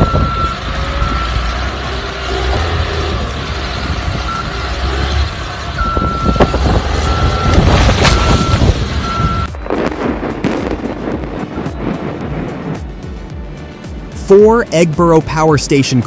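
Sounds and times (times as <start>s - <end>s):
backup alarm beeping: 0.0s - 1.8s, 4.1s - 4.7s, 5.8s - 9.6s
bulldozer diesel engine rumbling: 0.0s - 14.7s.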